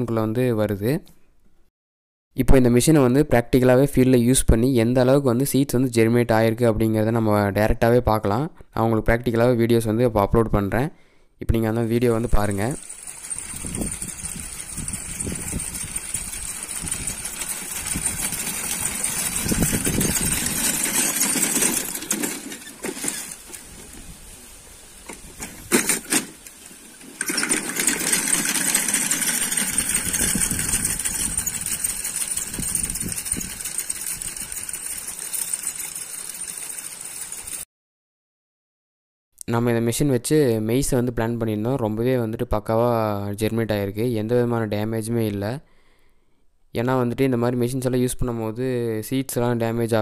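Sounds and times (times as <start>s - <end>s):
hand seeder rattling and clicking: 11.8s - 24.3s, 25.0s - 37.6s.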